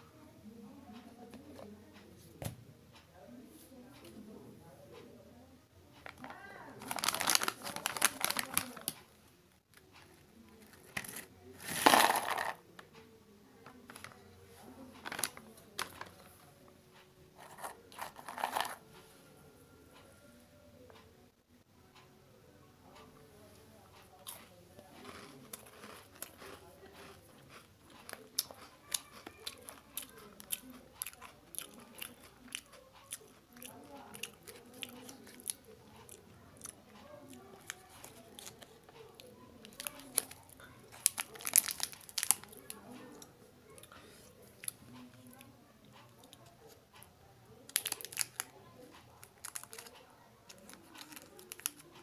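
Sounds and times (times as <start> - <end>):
plastic packet crinkling: 6.1 - 9.0, 10.9 - 12.6, 15.0 - 16.1, 17.4 - 18.8, 39.8 - 42.7, 47.7 - 48.5, 49.3 - 49.9, 50.5 - 51.9
loud plastic rustle: 6.8 - 8.8
biscuit crunching while chewed: 25.0 - 36.8, 39.7 - 42.6, 47.7 - 48.5, 49.2 - 52.0.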